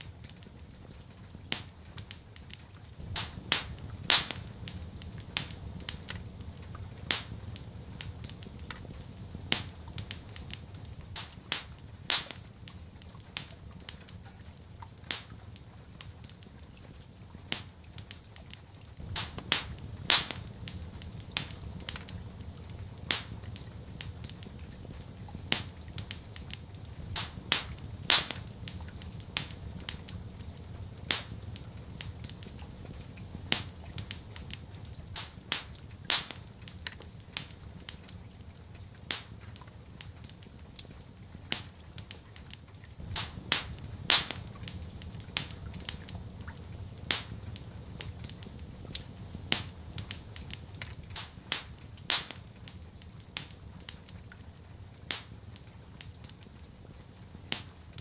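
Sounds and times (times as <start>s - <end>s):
wood fire crackling and popping: 0.0s - 58.0s.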